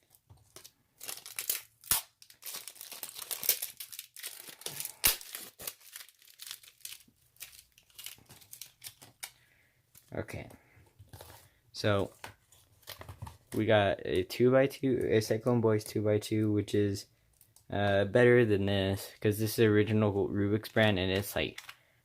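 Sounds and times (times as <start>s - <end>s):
packaging crinkled and torn: 0.4s - 9.4s.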